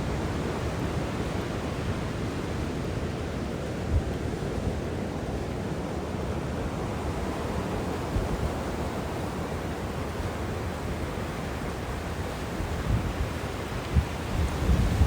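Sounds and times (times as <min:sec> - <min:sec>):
wind rumbling on microphone: 0:12.6 - 0:15.0.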